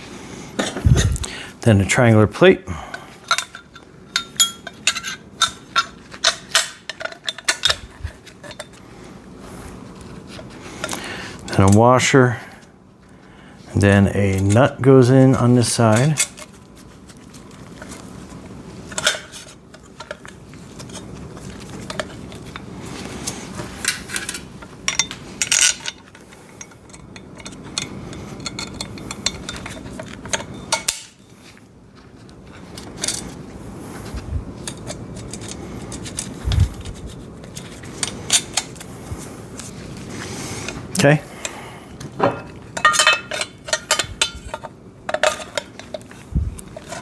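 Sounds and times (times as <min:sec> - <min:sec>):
bolts and nuts clinking on steel: 0:03.2 - 0:08.8, 0:13.8 - 0:16.6, 0:18.9 - 0:31.2, 0:32.5 - 0:33.4, 0:42.0 - 0:47.0.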